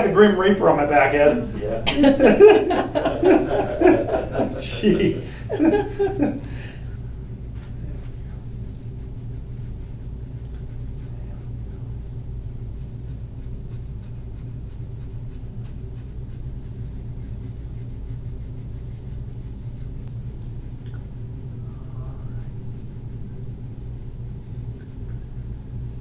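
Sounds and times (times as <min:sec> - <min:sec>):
steady low hum: 0:00.0 - 0:26.0
light scraping on skin: 0:06.9 - 0:25.9.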